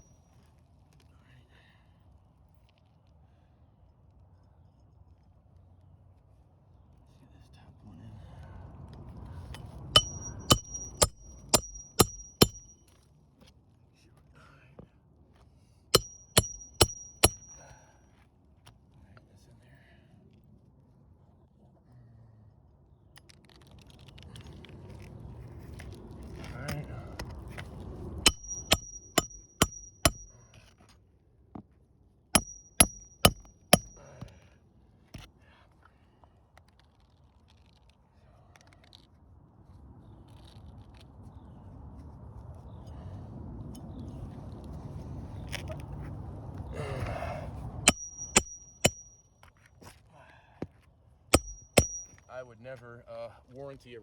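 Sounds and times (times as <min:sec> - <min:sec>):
metallic ring: 0:09.6 - 0:12.9, 0:16.0 - 0:17.8, 0:28.2 - 0:30.5, 0:32.4 - 0:34.2, 0:47.9 - 0:49.5, 0:51.4 - 0:52.3
hammer blows on metal: 0:10.0 - 0:12.8, 0:16.0 - 0:17.7, 0:28.3 - 0:30.4, 0:32.4 - 0:34.4, 0:47.9 - 0:49.2, 0:51.4 - 0:52.2.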